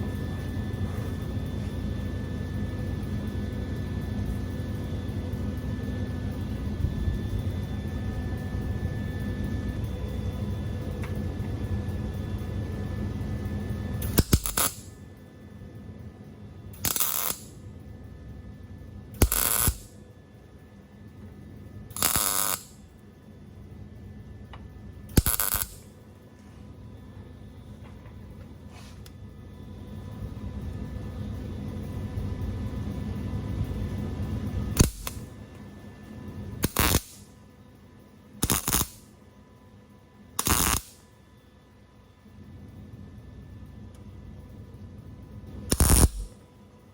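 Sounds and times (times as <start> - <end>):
sharp clicks: 14.0 - 14.8, 25.2 - 25.8, 45.7 - 46.3
welding arc crackling: 14.0 - 15.0, 16.8 - 17.6, 19.2 - 20.0, 21.9 - 22.8, 25.1 - 25.9, 34.8 - 35.3, 36.6 - 37.3, 38.4 - 39.1, 40.4 - 41.0, 45.7 - 46.4.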